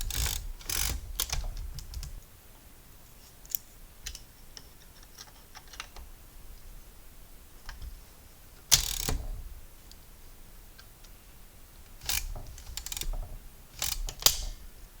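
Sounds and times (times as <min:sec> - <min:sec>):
loud typewriter mechanical clunk: 0:00.0 - 0:01.8, 0:08.7 - 0:09.4, 0:13.8 - 0:14.6
typewriter mechanism clicking: 0:00.0 - 0:02.1, 0:08.7 - 0:09.3, 0:12.0 - 0:13.2, 0:13.8 - 0:14.6.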